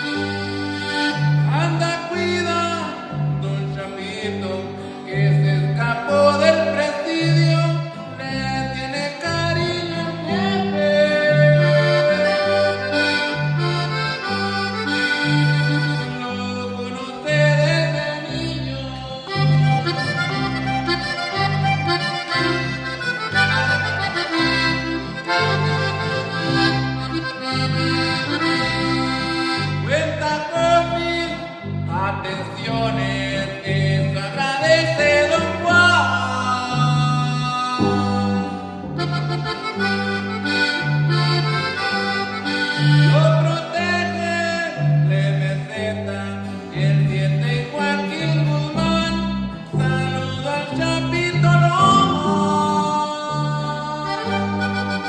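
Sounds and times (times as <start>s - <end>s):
accordion melody: 0.0s - 55.0s
guitar strumming: 0.0s - 55.0s
electric bass line: 7.4s - 16.2s, 17.4s - 44.3s, 48.3s - 55.0s.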